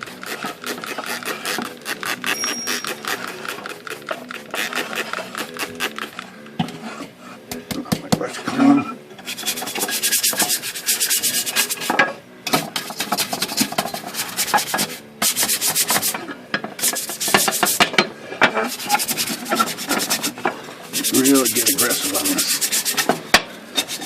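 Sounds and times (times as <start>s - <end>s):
stiff brush scrubbing: 0.0s - 6.1s, 9.3s - 11.9s, 12.9s - 16.2s, 18.6s - 24.0s.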